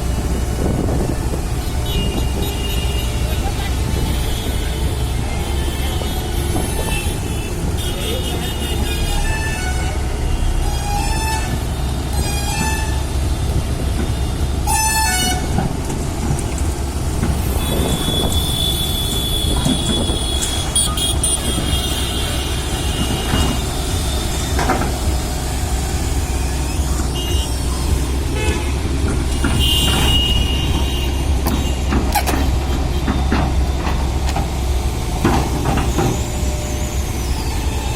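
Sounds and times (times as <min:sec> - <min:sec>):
construction machine engine drone: 0:00.0 - 0:37.9
short beeps or horn toots: 0:17.6 - 0:23.6, 0:26.7 - 0:28.7, 0:29.3 - 0:31.8.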